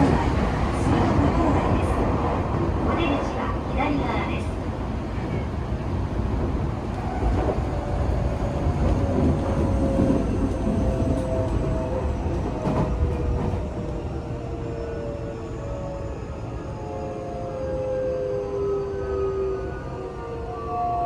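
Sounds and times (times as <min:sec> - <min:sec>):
wheels rumbling on rails: 0:00.0 - 0:14.3.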